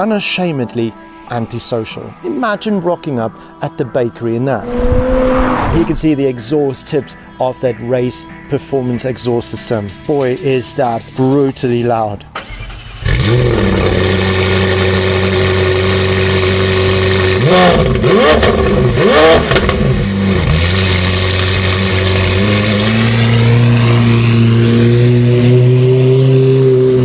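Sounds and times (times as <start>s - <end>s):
car engine idling and revving: 4.6s - 6.2s, 12.4s - 27.0s.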